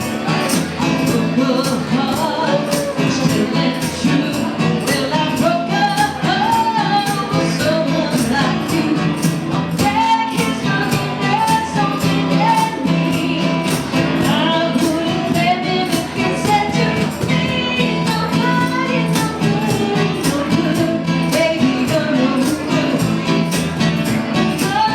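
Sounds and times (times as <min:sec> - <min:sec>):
drums: 0:00.0 - 0:24.9
jangling tambourine: 0:00.0 - 0:24.9
rock band playing: 0:00.0 - 0:24.9.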